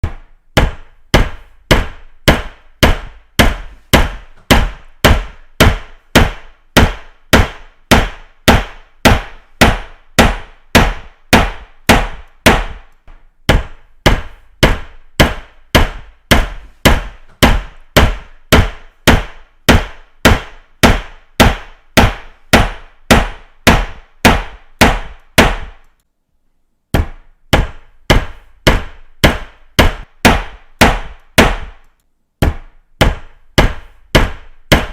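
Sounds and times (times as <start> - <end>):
hammer blows ringing: 0.0 - 25.9.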